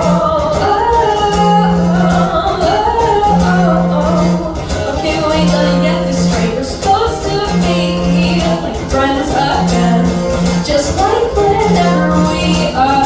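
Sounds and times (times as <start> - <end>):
held low note: 0.0 - 9.0.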